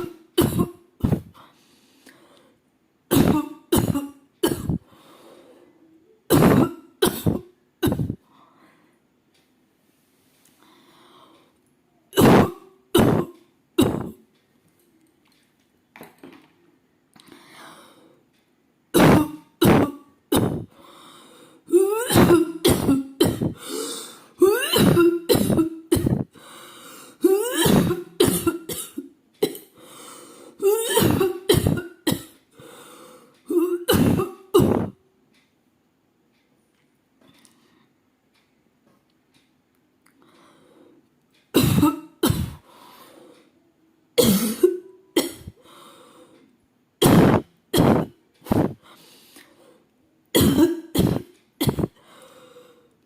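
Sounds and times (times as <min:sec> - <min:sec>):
woman coughing: 0:00.0 - 0:01.4, 0:03.1 - 0:04.8, 0:06.3 - 0:08.2, 0:12.2 - 0:14.2, 0:19.0 - 0:20.7, 0:21.7 - 0:23.6, 0:24.4 - 0:26.3, 0:27.2 - 0:29.8, 0:30.6 - 0:32.4, 0:33.5 - 0:34.9, 0:41.6 - 0:42.6, 0:44.2 - 0:45.6, 0:47.0 - 0:48.8, 0:50.4 - 0:52.0
faint breaths: 0:01.1 - 0:02.7, 0:04.8 - 0:06.2, 0:08.2 - 0:12.0, 0:17.1 - 0:18.4, 0:20.6 - 0:21.7, 0:23.5 - 0:24.4, 0:26.2 - 0:27.2, 0:29.7 - 0:30.6, 0:32.5 - 0:33.5, 0:40.2 - 0:41.4, 0:42.5 - 0:43.7, 0:45.5 - 0:46.6, 0:48.4 - 0:49.9, 0:52.0 - 0:53.0.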